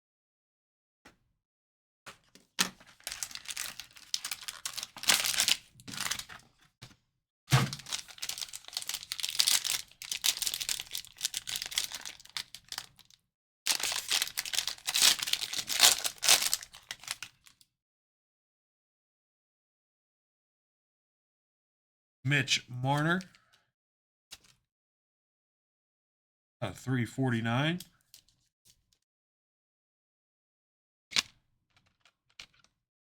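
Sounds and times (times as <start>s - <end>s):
plastic wrapping tearing and crinkling: 2.9s - 6.3s, 7.7s - 13.0s, 13.7s - 17.3s
thump: 7.5s - 7.8s.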